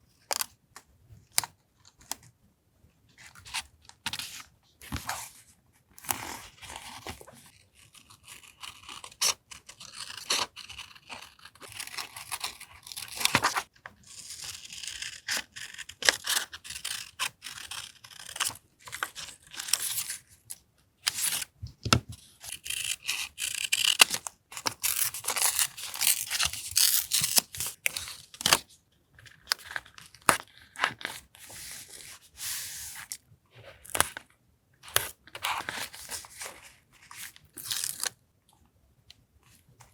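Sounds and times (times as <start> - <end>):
paper tearing: 23.6 - 28.6.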